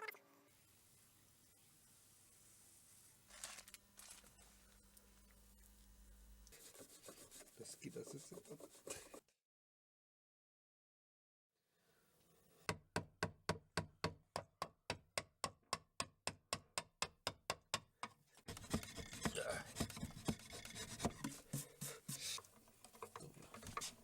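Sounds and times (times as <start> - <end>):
hand filing strokes: 6.5 - 9.2, 18.5 - 24.0.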